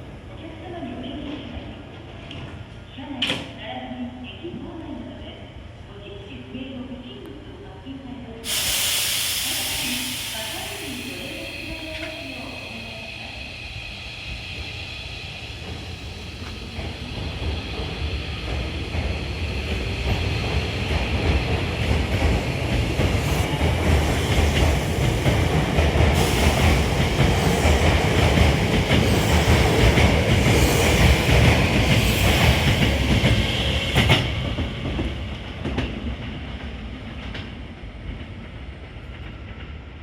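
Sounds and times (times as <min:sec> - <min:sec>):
electric train running past: 0:08.4 - 0:40.0.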